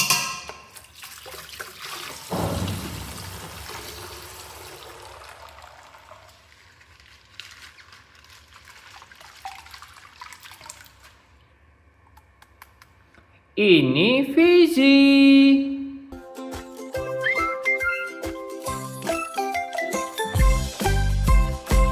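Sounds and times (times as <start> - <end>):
hissing crackling liquid trickle: 0.8 - 11.7.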